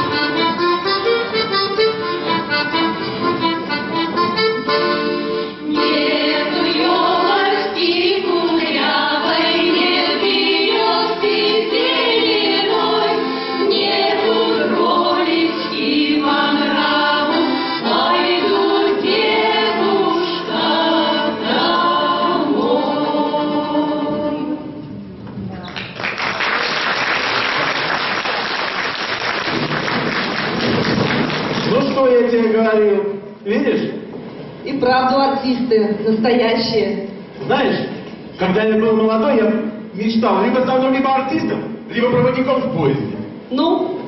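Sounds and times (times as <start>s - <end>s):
accordion: 0.0s - 24.6s
choir singing: 5.6s - 24.8s.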